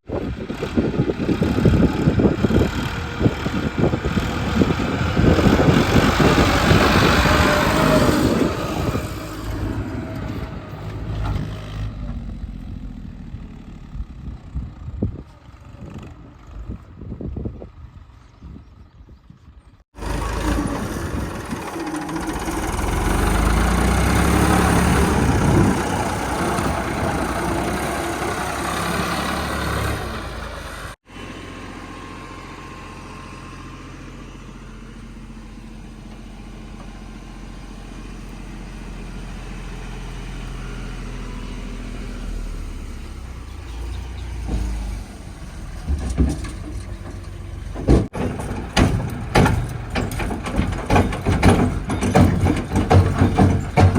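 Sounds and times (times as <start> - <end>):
backhoe diesel engine: 0.0 - 53.9
sharp knocks: 47.8 - 53.9.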